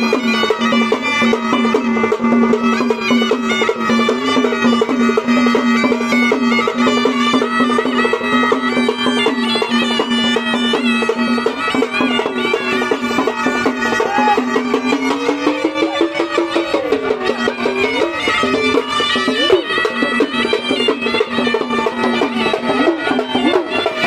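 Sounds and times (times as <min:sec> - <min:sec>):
sliding melody instrument: 0:00.0 - 0:24.0
fast drum rhythm: 0:09.2 - 0:24.0.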